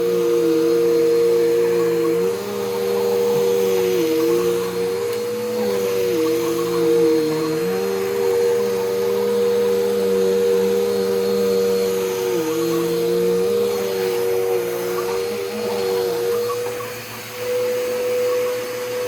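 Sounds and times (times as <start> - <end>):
upright vacuum cleaner running: 0.0 - 19.0.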